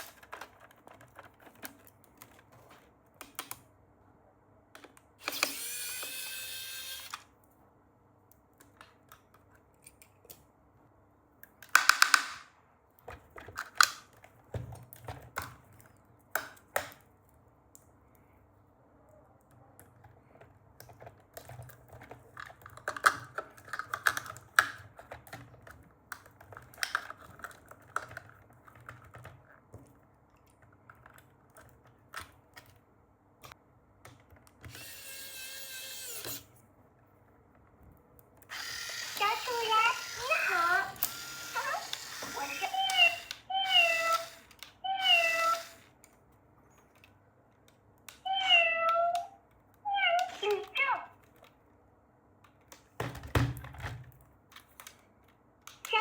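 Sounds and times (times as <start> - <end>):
packaging clicks and taps: 11.4 - 12.4, 19.8 - 32.8.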